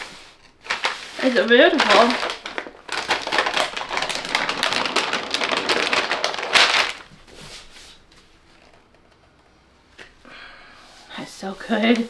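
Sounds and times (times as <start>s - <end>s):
paper crinkling: 0.0s - 7.6s.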